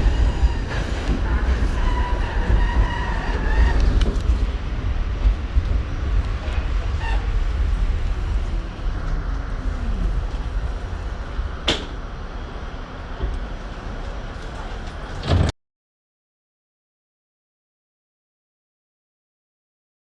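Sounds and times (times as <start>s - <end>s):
subway car rumble: 0.0s - 15.6s.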